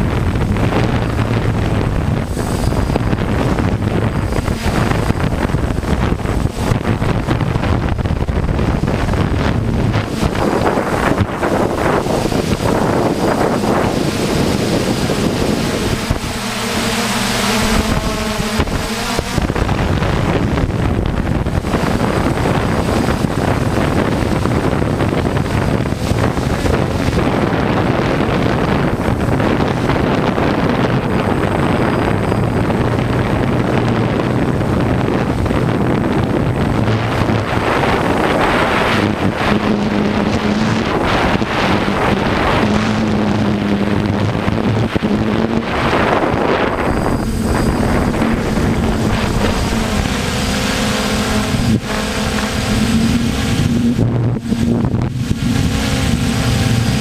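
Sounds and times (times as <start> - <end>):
drone motors humming: 0.0 - 57.0
wind buffeting microphone: 0.0 - 57.0.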